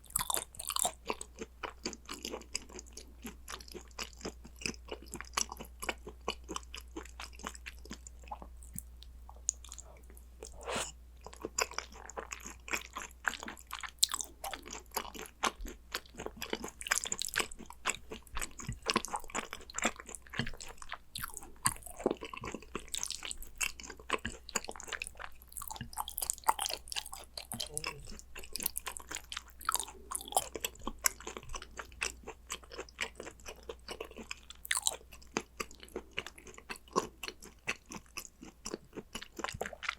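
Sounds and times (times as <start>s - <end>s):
chewing with mouth clicks: 0.0s - 39.9s.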